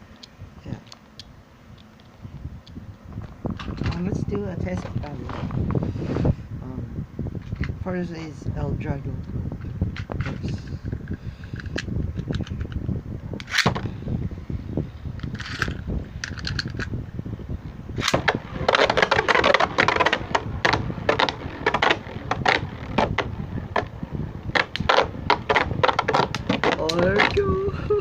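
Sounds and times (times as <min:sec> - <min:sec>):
spinning top plastic clicking: 0:18.0 - 0:23.9.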